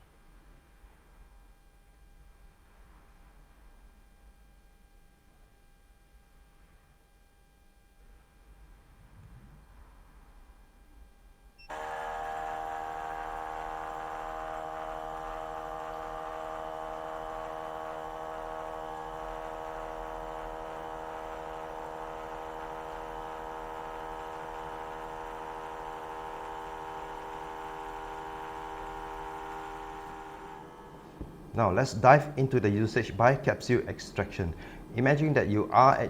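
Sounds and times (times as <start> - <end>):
espresso machine pump humming: 11.6 - 31.7.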